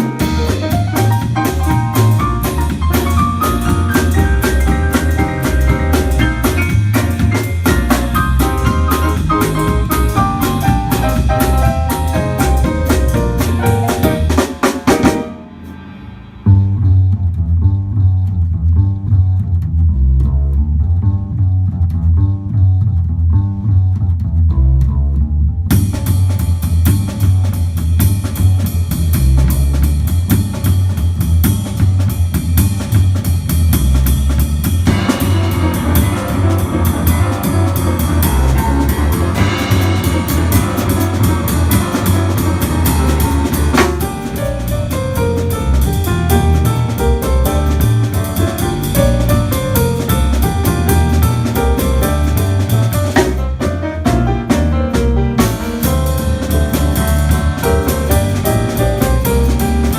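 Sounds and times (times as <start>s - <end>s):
drum kit with cymbals: 0.0s - 18.0s, 25.7s - 59.9s
bass line: 0.0s - 59.9s.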